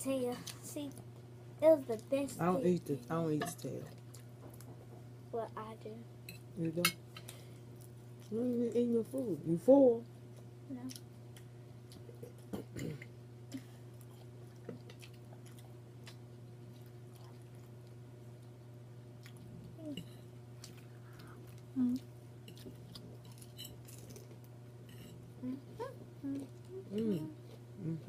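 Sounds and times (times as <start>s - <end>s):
steady low hum: 0.0s - 28.0s
people chewing food: 3.9s - 5.0s, 7.2s - 9.2s, 10.3s - 28.0s.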